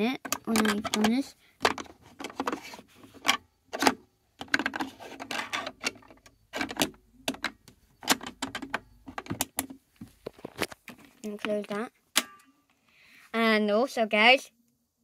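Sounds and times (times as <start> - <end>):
hard plastic toy clicking and rattling: 0.0 - 9.7.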